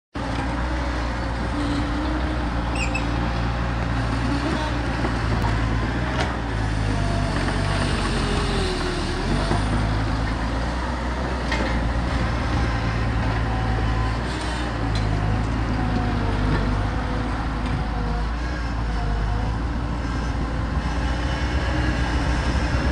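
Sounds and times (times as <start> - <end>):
loader engine running: 0.2 - 22.9.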